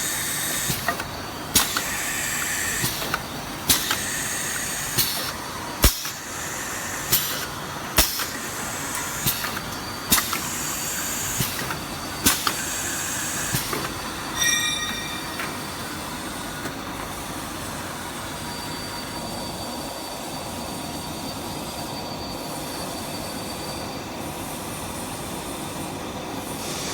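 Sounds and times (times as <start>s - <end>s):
thin high whine: 14.3s - 16.7s.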